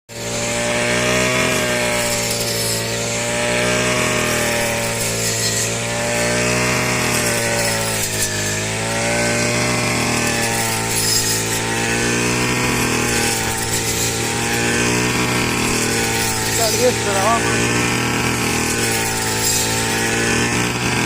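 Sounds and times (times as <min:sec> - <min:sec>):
small engine running under load: 0:00.1 - 0:21.0.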